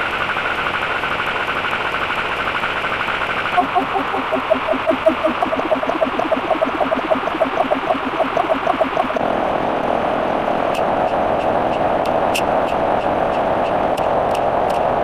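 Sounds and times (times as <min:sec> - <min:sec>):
fast pulsing tone: 0:03.5 - 0:09.2
sharp clicks: 0:03.6 - 0:09.2
steady rushing noise: 0:03.6 - 0:15.0.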